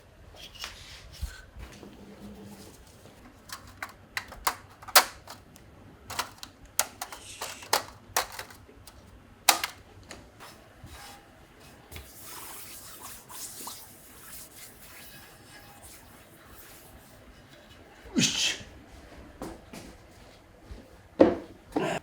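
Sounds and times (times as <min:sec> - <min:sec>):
hand tools clicking and tapping: 0:03.4 - 0:08.6, 0:09.5 - 0:10.2.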